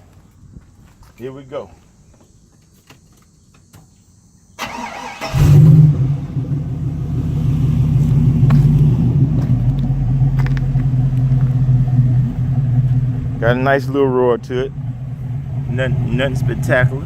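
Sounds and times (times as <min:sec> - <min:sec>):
engine deep idle: 0:06.1 - 0:17.0.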